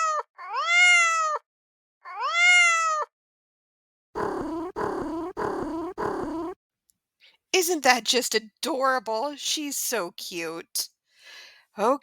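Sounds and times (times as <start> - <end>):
kitten meowing: 0.0 - 1.4, 2.1 - 3.1
low rough purr: 4.2 - 6.6.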